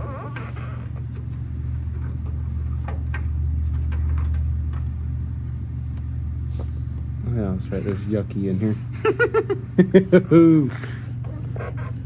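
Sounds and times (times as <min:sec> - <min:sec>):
low mechanical hum: 0:00.0 - 0:12.0
faint metal clicks: 0:05.9 - 0:06.1.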